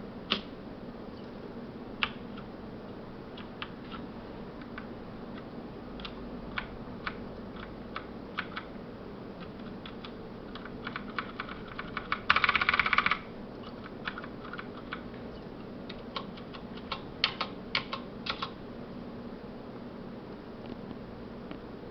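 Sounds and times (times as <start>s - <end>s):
mechanical keyboard typing: 6.0s - 8.8s, 9.4s - 15.0s, 15.9s - 18.6s.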